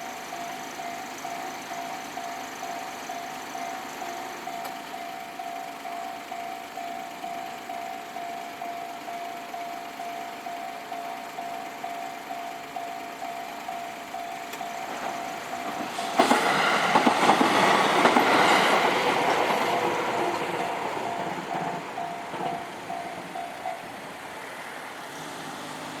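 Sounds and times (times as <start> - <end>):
level-crossing warning bell: 0.0 - 26.0
train passing: 0.0 - 26.0.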